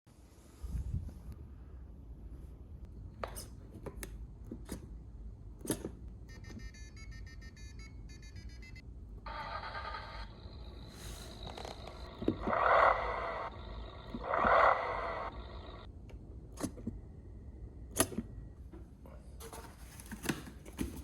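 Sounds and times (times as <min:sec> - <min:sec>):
electronic beeping tune: 0:06.3 - 0:08.8.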